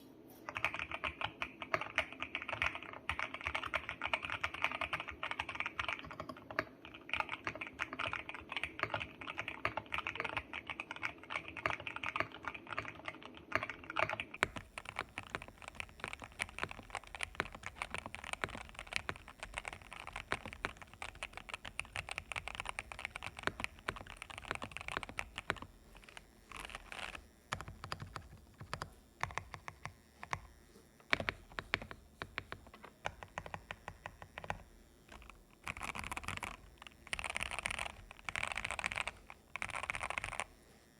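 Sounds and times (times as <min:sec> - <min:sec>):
fast typing on mechanical keyboard: 0:00.5 - 0:40.6
microphone hiss: 0:14.4 - 0:40.9.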